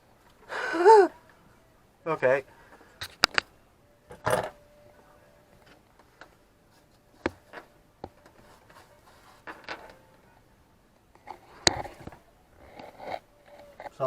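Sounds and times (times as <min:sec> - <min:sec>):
rustling: 0:05.6 - 0:10.3.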